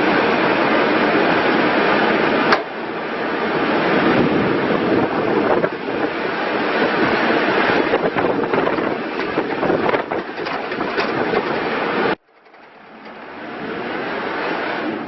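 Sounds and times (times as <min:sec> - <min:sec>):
diesel engine running: 0:00.0 - 0:15.0
wind buffeting microphone: 0:00.0 - 0:15.0
rattles: 0:08.5 - 0:13.7.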